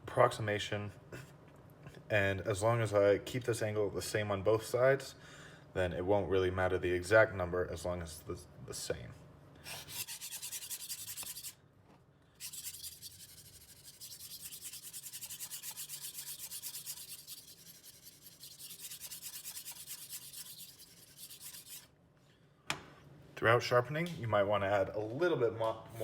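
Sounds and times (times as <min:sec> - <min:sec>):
knife scraping on sharpening stone: 0:09.7 - 0:11.6, 0:12.4 - 0:21.9.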